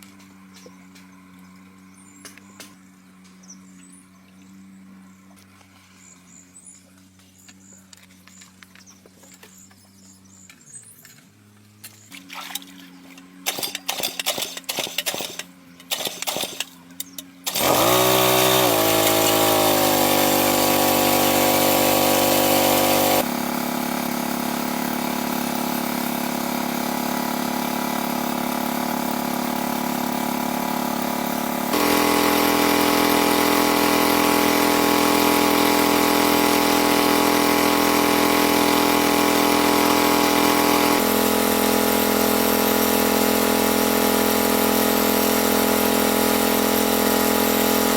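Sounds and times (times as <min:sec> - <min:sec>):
small engine starting and running: 0:11.8 - 0:47.9.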